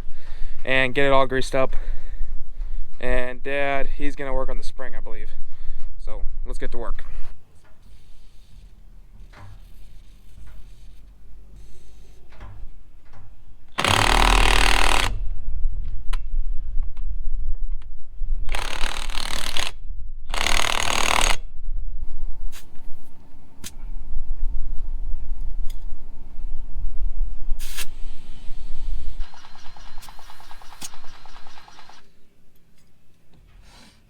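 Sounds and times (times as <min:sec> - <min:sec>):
impact wrench bursts: 0:13.7 - 0:15.2, 0:18.5 - 0:21.4, 0:27.6 - 0:32.1.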